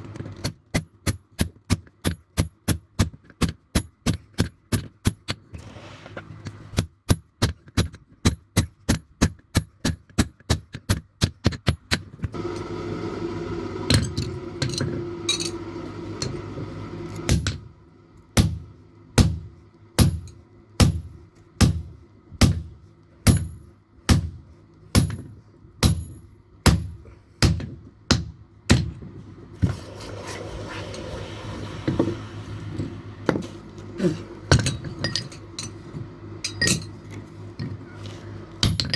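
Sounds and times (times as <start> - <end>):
droning hum: 12.3 - 38.9.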